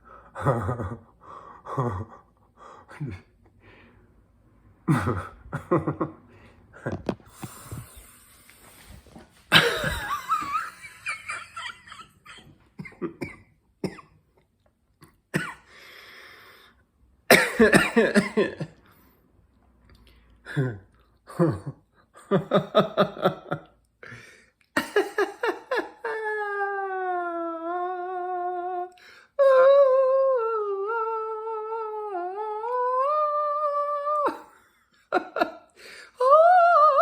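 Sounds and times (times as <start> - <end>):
person laughing: 0.4 - 1.1, 4.9 - 8.0, 9.5 - 13.3, 20.5 - 23.8, 24.8 - 26.6, 34.2 - 35.7.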